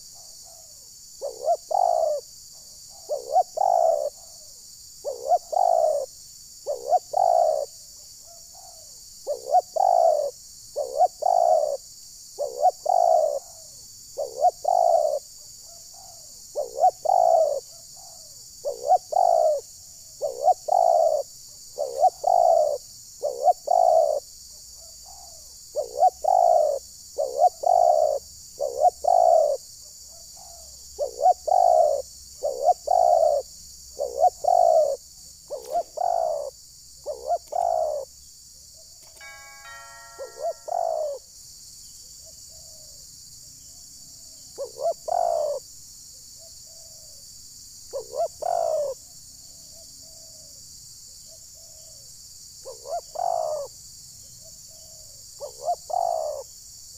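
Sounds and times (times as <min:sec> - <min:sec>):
doves cooing: 0:00.0 - 0:02.3, 0:02.9 - 0:04.3, 0:05.0 - 0:11.8, 0:12.4 - 0:13.6, 0:14.2 - 0:15.2, 0:16.0 - 0:19.6, 0:20.2 - 0:38.1, 0:40.2 - 0:41.2, 0:44.6 - 0:45.6, 0:47.9 - 0:49.0, 0:52.6 - 0:53.7, 0:54.9 - 0:56.5.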